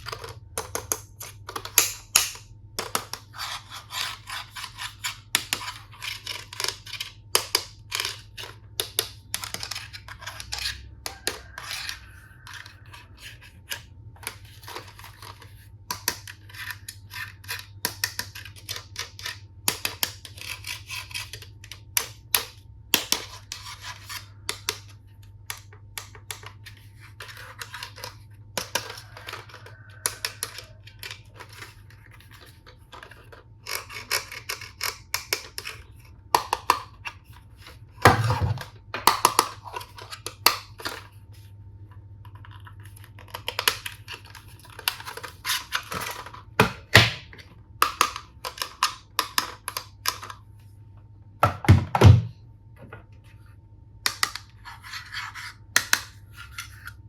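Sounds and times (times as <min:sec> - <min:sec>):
plastic toy pieces clicking: 0:00.0 - 0:03.2.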